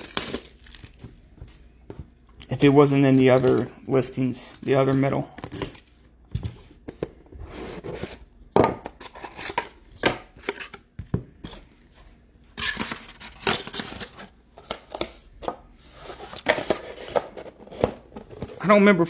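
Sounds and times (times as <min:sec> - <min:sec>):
card packs rustling: 0:00.0 - 0:01.3, 0:02.5 - 0:06.0, 0:15.9 - 0:19.0.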